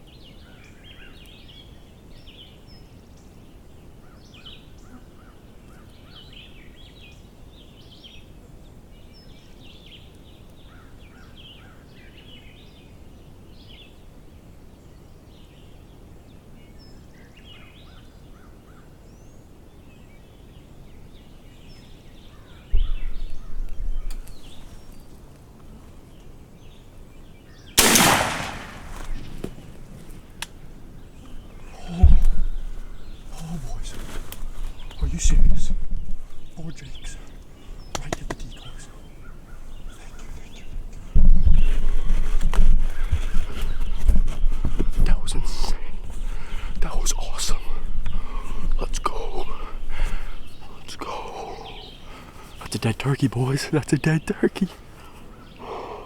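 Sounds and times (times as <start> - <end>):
low background hiss: 11.3 - 31.8
birds chirping and calling: 49.0 - 56.0.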